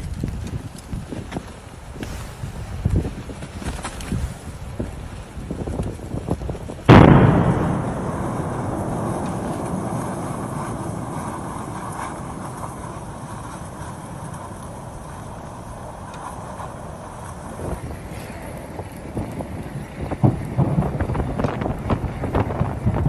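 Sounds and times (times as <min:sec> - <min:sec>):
explosive boom: 0:06.9 - 0:14.5
long low rumble: 0:06.9 - 0:15.9.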